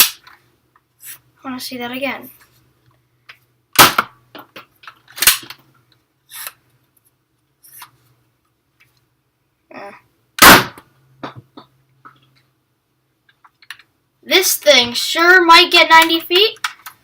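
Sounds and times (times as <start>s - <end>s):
dart blaster firing snaps: 3.8s - 4.1s, 10.4s - 10.8s.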